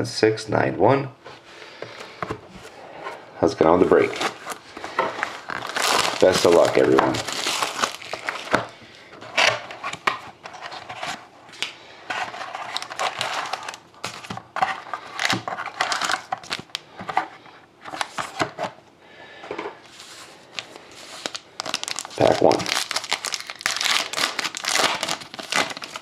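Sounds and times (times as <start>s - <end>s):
packaging crinkling and tearing: 4.0s - 8.7s, 9.3s - 16.9s, 19.9s - 26.0s.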